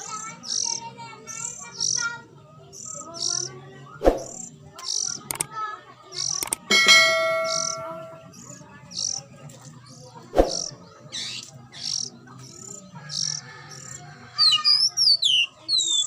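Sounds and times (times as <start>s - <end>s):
sharp knock: 6.7s - 8.2s.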